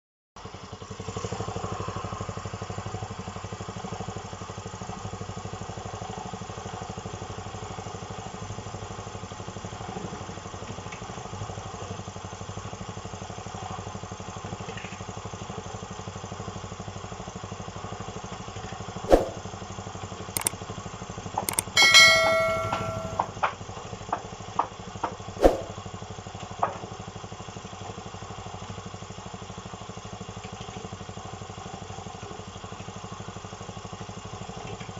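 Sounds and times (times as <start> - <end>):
ringing metal clang: 21.5 - 23.4
sharp metallic clanks: 21.5 - 23.4, 25.4 - 25.8.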